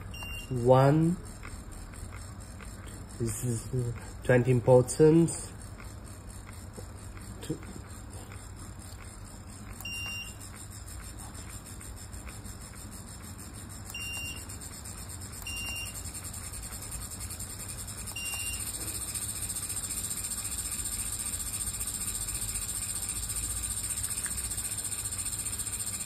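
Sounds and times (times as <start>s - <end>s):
speed controller high beeps: 0.0s - 1.5s, 9.6s - 11.7s, 13.5s - 16.2s, 18.0s - 19.7s
small electric motor whine: 0.0s - 26.0s.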